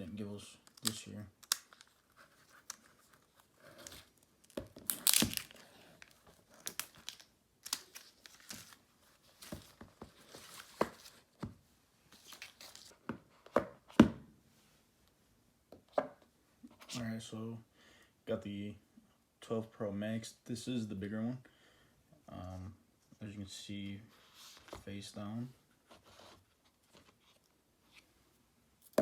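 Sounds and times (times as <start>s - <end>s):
packaging tearing: 3.8s - 8.8s.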